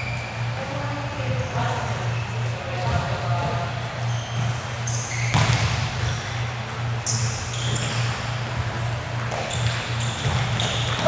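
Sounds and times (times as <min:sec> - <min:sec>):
sneakers squeaking on floor: 0:00.0 - 0:11.0
basketball bouncing: 0:02.7 - 0:11.0.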